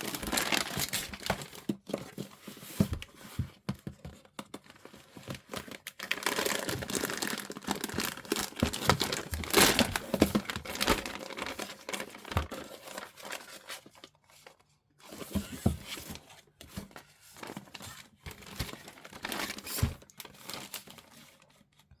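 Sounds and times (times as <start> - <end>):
plastic bags crinkling: 0.0 - 1.6, 4.7 - 14.1, 17.4 - 21.2.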